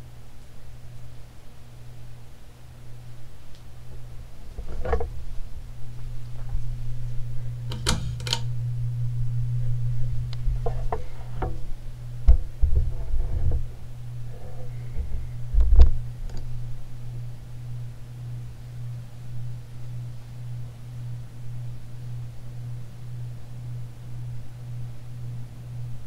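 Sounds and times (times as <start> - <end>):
ceiling fan motor humming: 0.0 - 26.0
knocks and clicks: 7.7 - 8.5.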